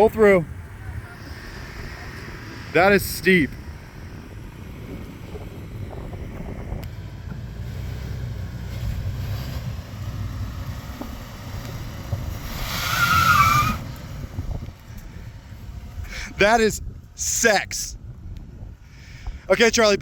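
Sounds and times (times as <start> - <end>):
truck engine low rumble: 0.0 - 20.0
wavering squeal: 12.5 - 13.8.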